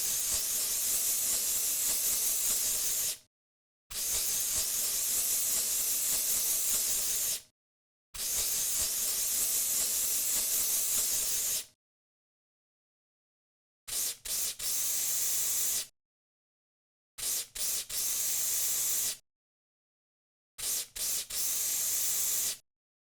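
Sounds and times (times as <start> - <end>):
aerosol can spraying: 0.0 - 3.2, 4.0 - 7.4, 8.2 - 11.7, 13.9 - 15.9, 17.2 - 19.2, 20.6 - 22.6.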